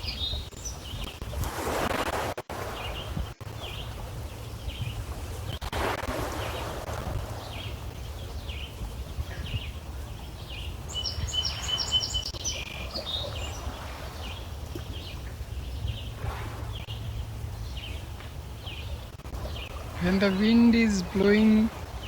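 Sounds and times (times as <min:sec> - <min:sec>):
small birds chirping: 0:00.0 - 0:01.2, 0:02.7 - 0:05.7, 0:07.3 - 0:22.0
low rumble: 0:15.0 - 0:20.4.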